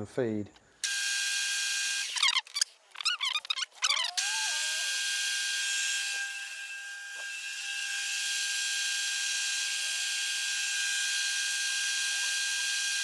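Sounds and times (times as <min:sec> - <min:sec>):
cutting tool hiss: 0:03.9 - 0:13.0
metal lathe whine: 0:04.2 - 0:13.0.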